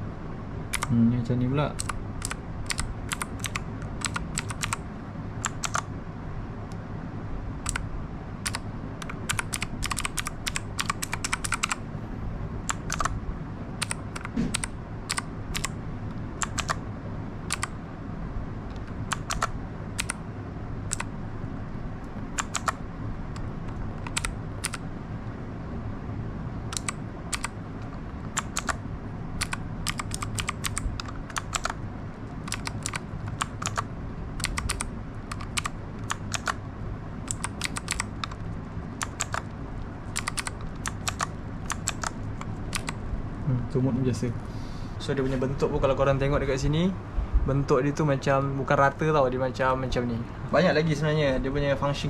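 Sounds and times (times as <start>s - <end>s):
low background hum: 0.0s - 52.0s
mechanical keyboard keys clacking: 0.7s - 1.0s, 1.8s - 4.8s, 5.4s - 5.9s, 7.6s - 7.8s, 8.4s - 11.8s, 12.7s - 13.2s, 13.8s - 15.8s, 16.4s - 16.8s, 17.5s - 17.7s, 18.7s - 20.2s, 20.9s - 21.1s, 22.4s - 24.8s, 26.7s - 28.8s, 29.4s - 31.8s, 32.4s - 36.6s, 37.2s - 39.5s, 40.1s - 43.0s.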